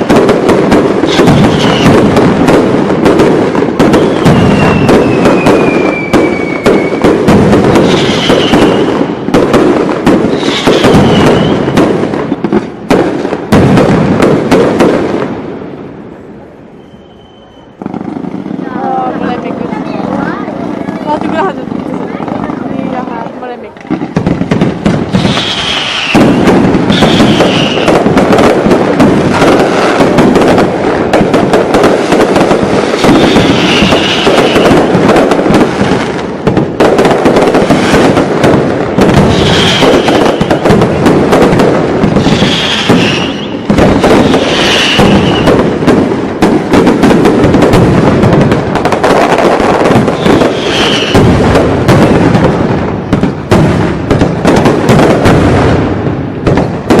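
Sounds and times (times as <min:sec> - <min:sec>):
fireworks bangs and crackling: 0:00.0 - 0:57.0
shrill high-pitched whistles: 0:16.7 - 0:17.8, 0:25.3 - 0:26.2, 0:50.5 - 0:51.2.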